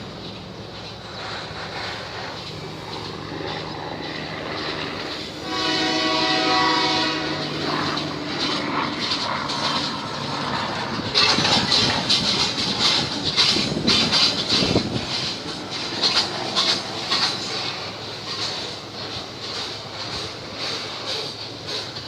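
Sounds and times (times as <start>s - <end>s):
locomotive engine humming: 0.0s - 22.0s
wheels clattering over rail joints: 0.0s - 22.0s
train horn: 5.3s - 8.6s.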